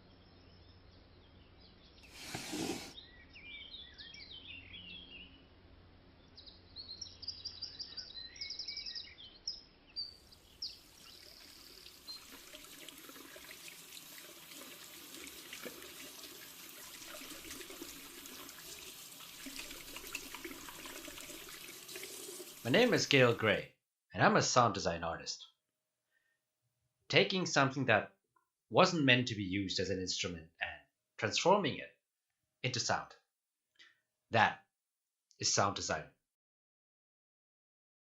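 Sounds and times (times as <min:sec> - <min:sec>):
birds chirping: 0:06.2 - 0:12.8
water running from a tap: 0:10.8 - 0:23.4.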